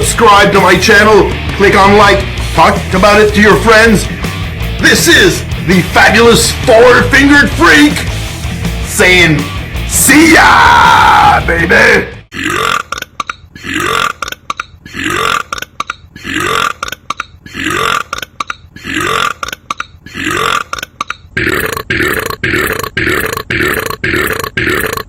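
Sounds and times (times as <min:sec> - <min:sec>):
man burping: 0:12.2 - 0:25.0.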